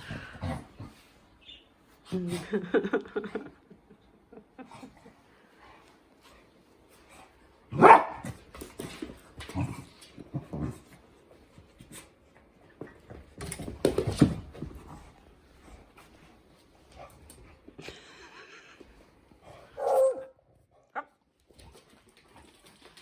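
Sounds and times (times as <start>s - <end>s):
dogs barking: 7.8s - 8.3s, 19.8s - 20.3s.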